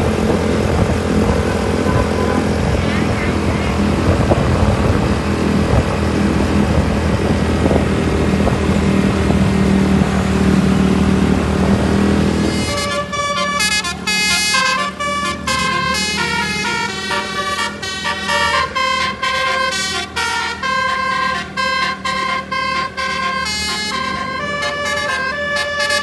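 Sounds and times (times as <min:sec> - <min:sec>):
vehicle engine drone: 0:00.0 - 0:26.0
musical air horn melody: 0:01.4 - 0:03.8, 0:12.4 - 0:26.0.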